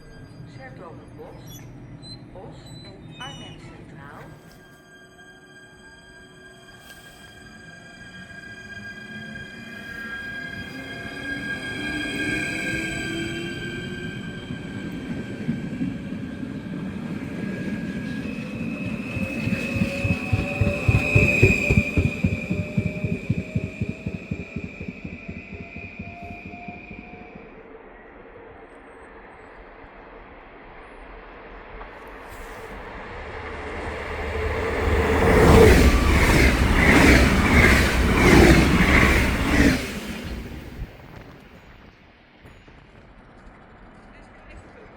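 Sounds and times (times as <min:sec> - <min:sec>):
train passing: 0:00.0 - 0:44.9
high whine: 0:02.5 - 0:44.9
train wheels clattering: 0:10.1 - 0:27.6, 0:32.9 - 0:41.8.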